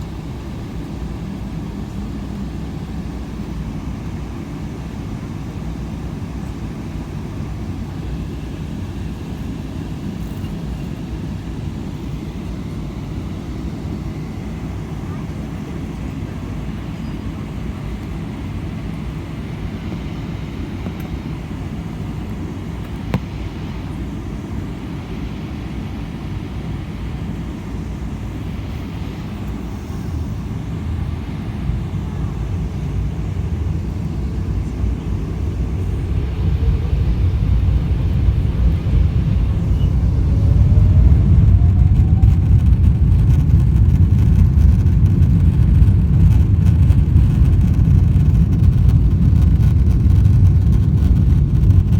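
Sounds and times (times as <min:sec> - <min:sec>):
vehicle rumbling: 0:28.4 - 0:51.9.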